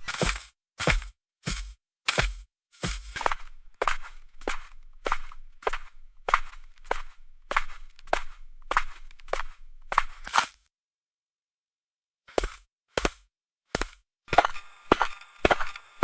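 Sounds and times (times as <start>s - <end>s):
footsteps on gravel: 12.3s - 13.2s, 13.8s - 15.8s.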